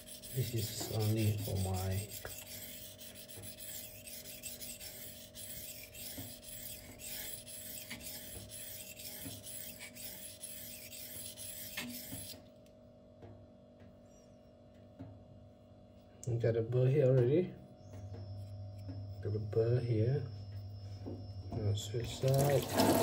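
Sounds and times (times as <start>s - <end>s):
knife scraping on whetstone: 0.0s - 12.4s.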